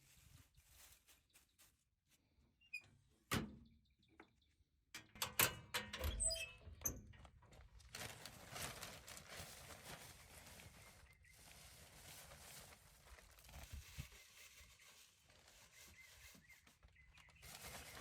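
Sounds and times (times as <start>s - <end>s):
rustling: 0.0s - 1.8s, 7.6s - 18.0s.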